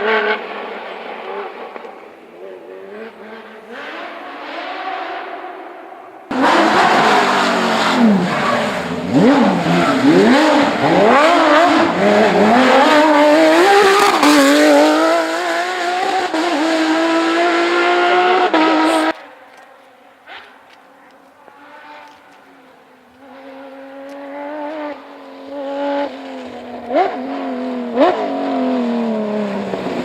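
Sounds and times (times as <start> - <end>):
race car engine revving: 6.3 - 19.2.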